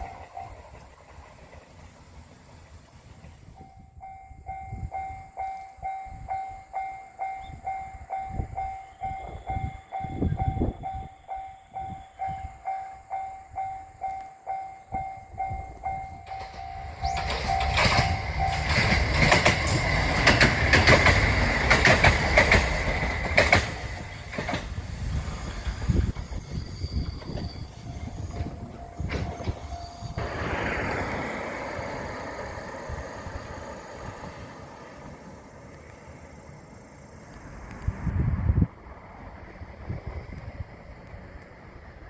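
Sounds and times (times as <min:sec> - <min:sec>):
level crossing warning bell: 0:00.0 - 0:00.8, 0:03.6 - 0:19.4
train wheels clattering over rail joints: 0:15.9 - 0:35.0.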